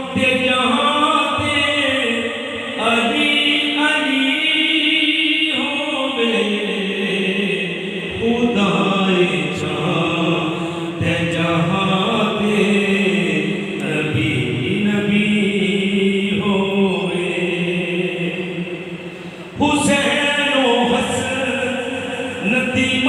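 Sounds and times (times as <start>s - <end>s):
devotional chant singing: 0.0s - 23.0s.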